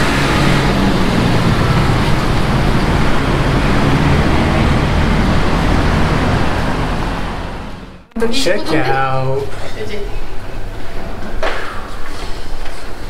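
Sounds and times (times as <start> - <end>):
road noise rush: 0.0 - 8.1
vehicle engine hum: 0.0 - 8.2.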